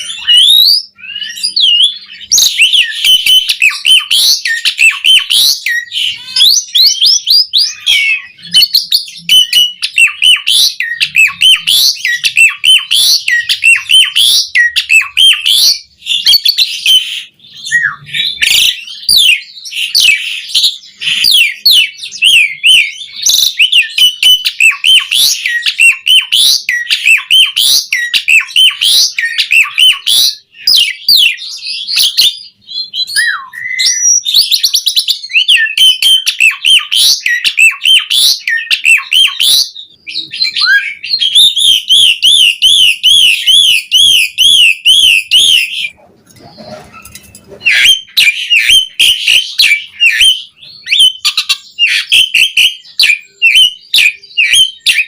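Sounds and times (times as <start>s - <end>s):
starling singing: 0.0s - 55.0s.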